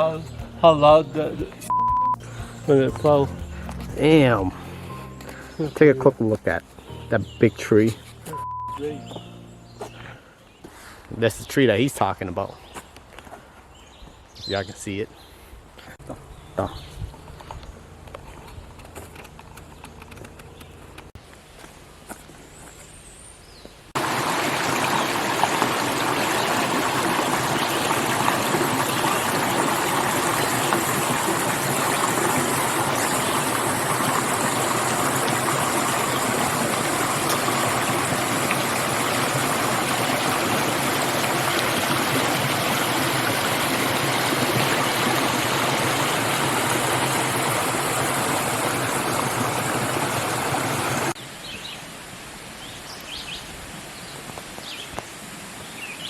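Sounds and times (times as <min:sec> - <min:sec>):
brook water rushing over rocks: 0:24.0 - 0:51.2.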